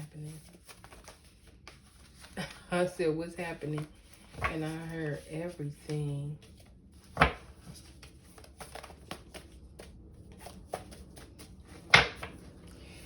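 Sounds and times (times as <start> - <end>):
cards shuffling and clicking: 7.0 - 12.4.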